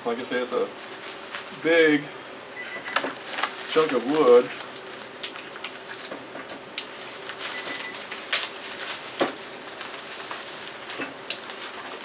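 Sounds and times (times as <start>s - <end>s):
packaging wrapper crinkling and tearing: 0.8s - 2.0s, 3.0s - 6.2s, 6.8s - 12.0s.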